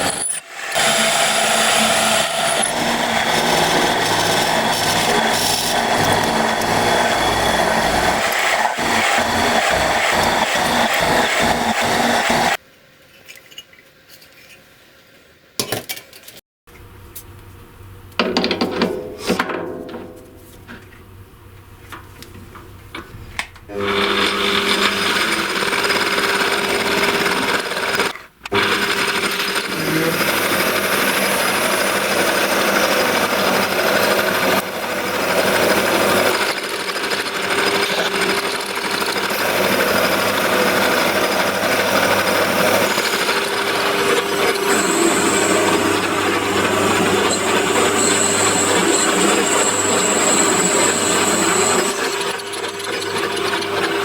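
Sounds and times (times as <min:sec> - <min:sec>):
power tool motor running: 0:00.0 - 0:12.6, 0:23.7 - 0:54.0.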